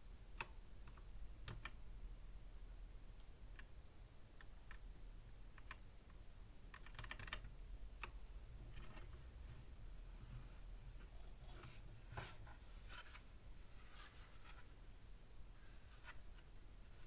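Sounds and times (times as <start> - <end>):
faint mechanical keyboard typing: 0.4 - 1.8, 5.5 - 9.2.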